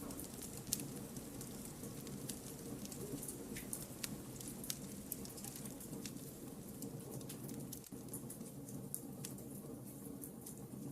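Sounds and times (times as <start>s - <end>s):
campfire flames rumbling: 0.0s - 10.9s
logs crackling and popping: 0.0s - 10.9s.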